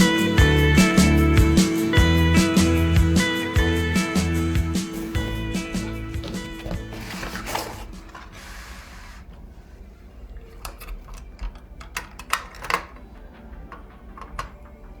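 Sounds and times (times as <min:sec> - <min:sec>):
computer parts clicking and knocking: 0:10.6 - 0:15.0.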